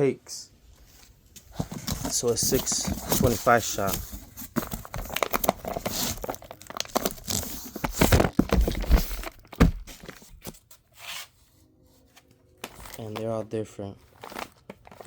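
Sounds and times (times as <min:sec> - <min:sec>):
plastic wrap crinkling: 0:01.6 - 0:10.6, 0:14.0 - 0:15.0
cardboard knocks and thumps: 0:07.7 - 0:10.6.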